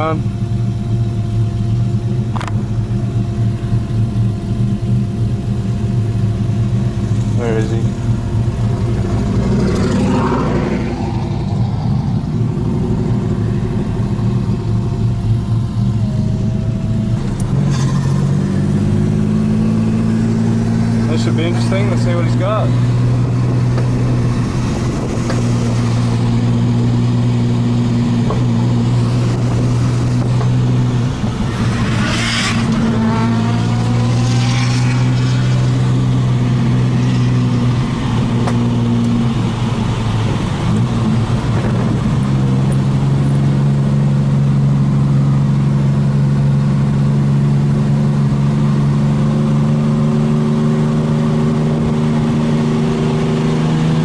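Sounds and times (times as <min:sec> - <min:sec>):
engine running at low revs: 0:00.0 - 0:54.0
another engine revving: 0:08.6 - 0:14.2, 0:17.2 - 0:39.1.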